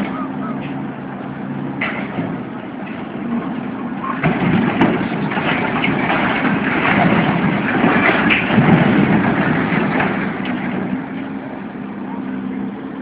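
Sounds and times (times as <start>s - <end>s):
low engine rumble: 0.0s - 13.0s
debris crunching and grinding: 2.8s - 11.2s.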